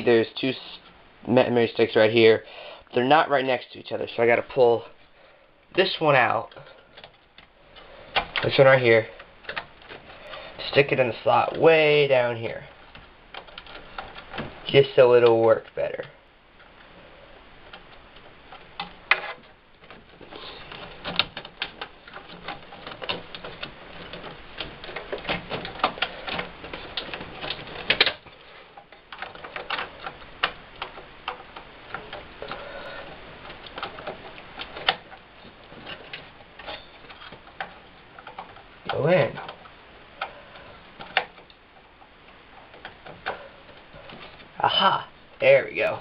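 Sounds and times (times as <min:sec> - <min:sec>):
retaining clips snapping: 0:05.6 - 0:46.0
plastic clicks and rattles: 0:06.5 - 0:11.6, 0:12.8 - 0:16.9, 0:17.6 - 0:44.6.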